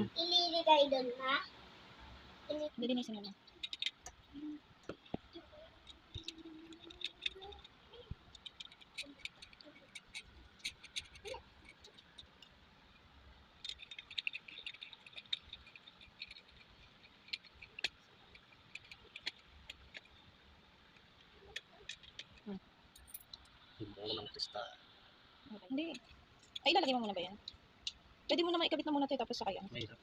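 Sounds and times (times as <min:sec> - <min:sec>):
high chirpy clicking: 0:13.6 - 0:20.2.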